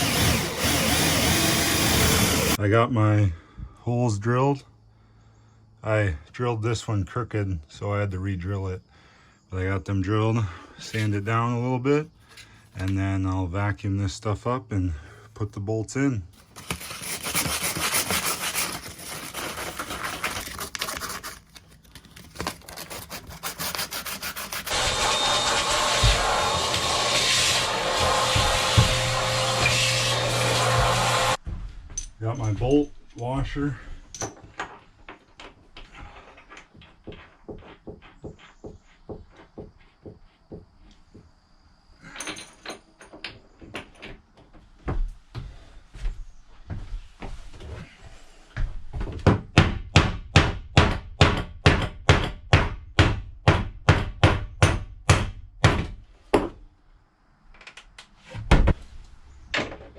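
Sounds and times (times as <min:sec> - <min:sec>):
vacuum cleaner hissing: 0:00.0 - 0:02.6, 0:23.0 - 0:31.4
sandpaper scraping on wood: 0:16.4 - 0:21.6, 0:22.4 - 0:31.4.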